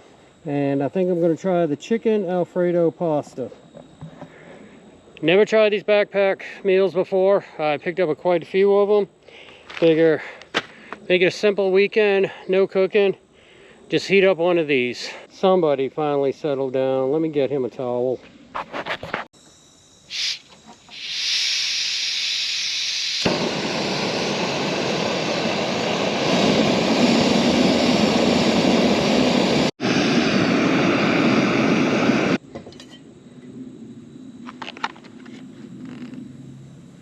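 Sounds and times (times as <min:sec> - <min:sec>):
gas stove burner hissing: 0:20.1 - 0:32.4.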